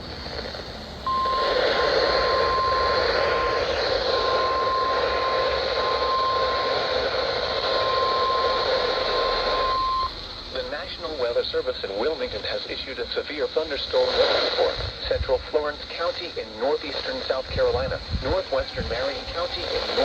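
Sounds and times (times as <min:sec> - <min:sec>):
radio hiss: 0:00.0 - 0:20.0
steady alarm tone: 0:01.0 - 0:12.4, 0:18.2 - 0:20.0.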